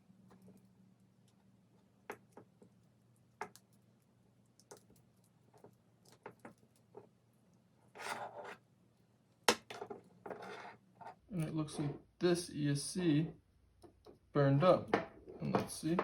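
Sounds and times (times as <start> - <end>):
rubbing scrape: 8.0 - 8.6.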